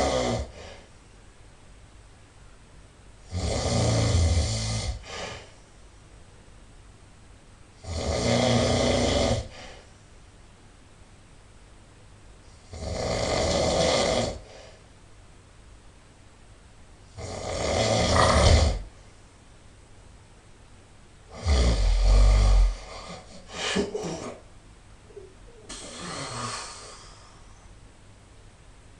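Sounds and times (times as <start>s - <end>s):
person snoring loudly: 0.0s - 0.8s, 3.3s - 5.5s, 7.8s - 9.8s, 12.6s - 14.7s, 17.2s - 18.9s, 21.3s - 24.2s, 25.7s - 27.4s.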